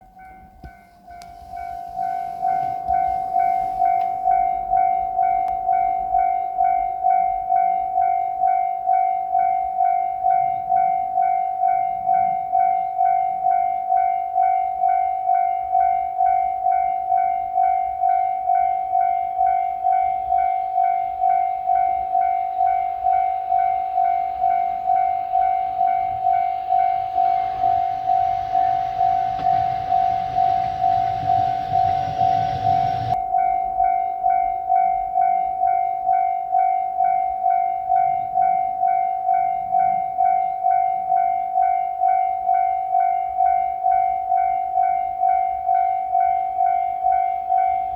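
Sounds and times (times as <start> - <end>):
railroad crossing bell ringing: 0.0 - 47.9
approaching train rumble: 22.2 - 33.9.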